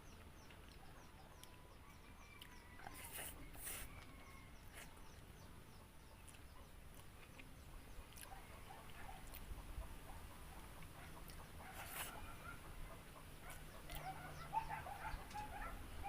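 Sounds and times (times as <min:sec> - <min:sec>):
eating clicks and crunches: 0:00.0 - 0:05.3, 0:06.1 - 0:09.6, 0:10.6 - 0:12.2, 0:13.5 - 0:14.2
chickens calling: 0:00.0 - 0:16.0
small birds calling: 0:00.0 - 0:16.0.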